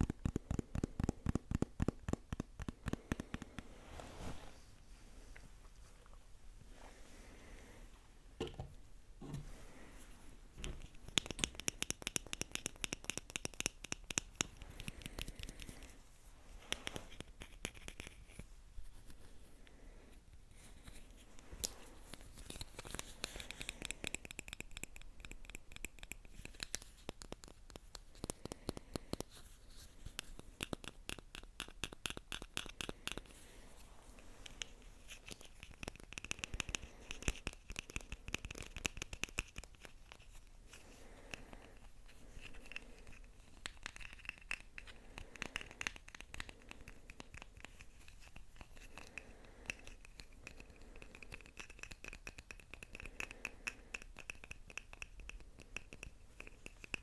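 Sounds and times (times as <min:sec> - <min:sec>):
scratching close to microphone: 0:03.2 - 0:06.9.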